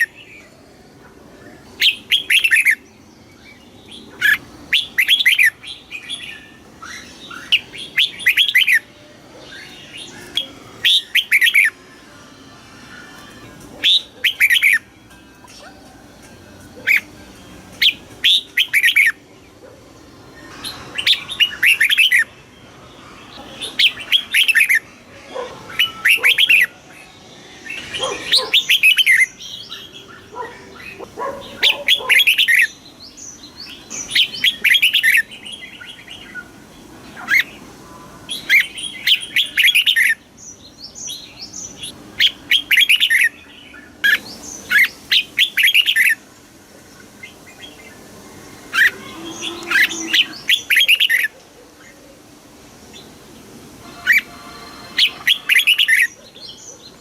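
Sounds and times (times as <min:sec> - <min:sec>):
bird chirping: 0:01.4 - 0:11.8, 0:13.0 - 0:19.8, 0:23.0 - 0:46.2, 0:53.8 - 0:57.0.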